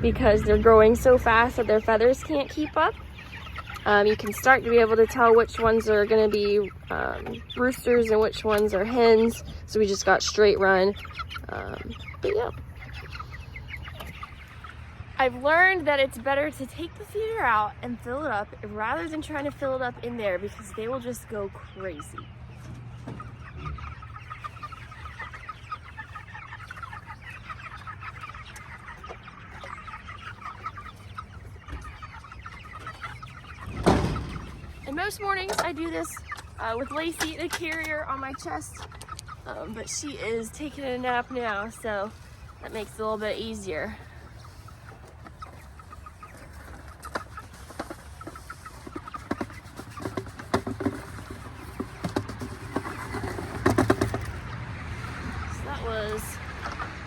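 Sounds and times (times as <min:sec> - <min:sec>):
chickens clucking and peeping: 0:00.0 - 0:57.0
sharp knocks: 0:33.6 - 0:34.6.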